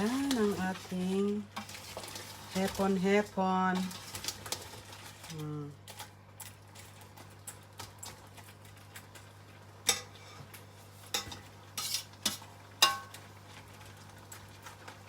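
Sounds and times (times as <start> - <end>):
metal utensil scraping a pan: 0.0 - 5.2, 9.9 - 13.2.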